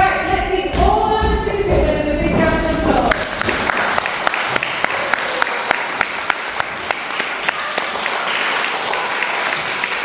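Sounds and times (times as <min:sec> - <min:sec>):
children applauding: 0:03.1 - 0:10.0.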